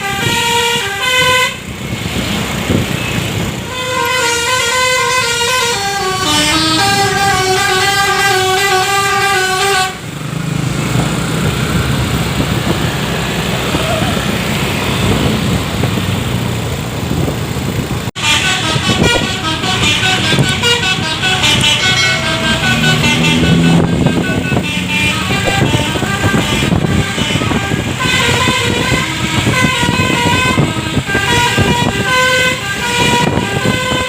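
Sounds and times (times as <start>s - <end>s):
bus horn playing tones: 0.0s - 1.7s, 3.0s - 10.2s, 18.2s - 34.0s
bus engine: 0.0s - 34.0s
road noise: 0.0s - 34.0s.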